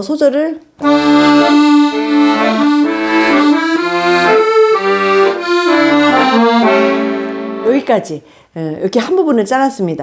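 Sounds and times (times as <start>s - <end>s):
solo accordion melody: 0.8s - 8.0s.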